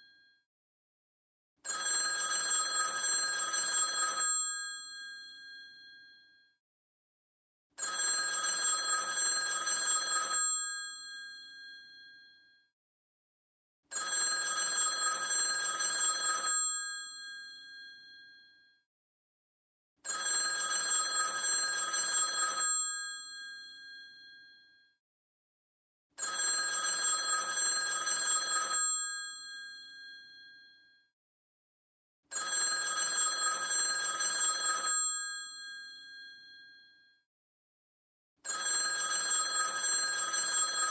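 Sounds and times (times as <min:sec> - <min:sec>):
telephone bell ringing: 0:01.6 - 0:06.4, 0:07.8 - 0:12.5, 0:13.9 - 0:18.6, 0:20.0 - 0:24.7, 0:26.2 - 0:30.9, 0:32.3 - 0:37.0, 0:38.4 - 0:40.9.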